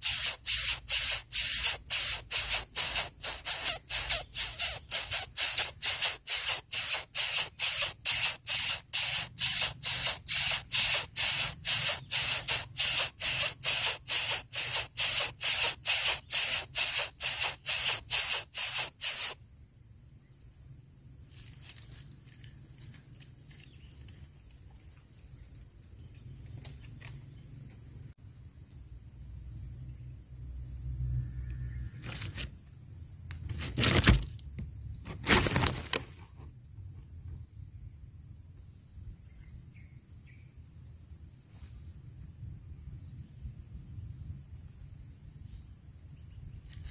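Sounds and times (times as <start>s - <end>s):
bird chick hissing in bursts: 0.0s - 19.4s.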